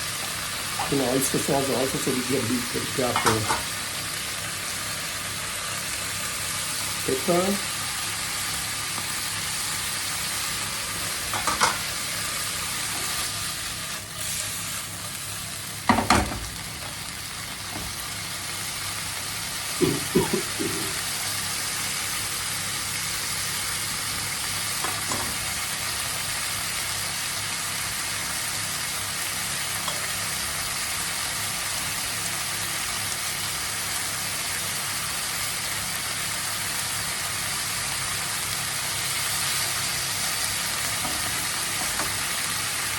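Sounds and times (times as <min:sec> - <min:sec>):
livers sizzling in a pan: 0:00.0 - 0:42.9
knocks against a pan: 0:15.9 - 0:16.4.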